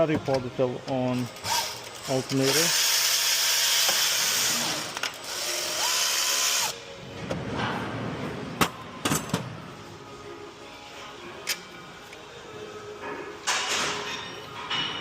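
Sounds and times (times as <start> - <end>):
power tool motor running: 1.4 - 6.7.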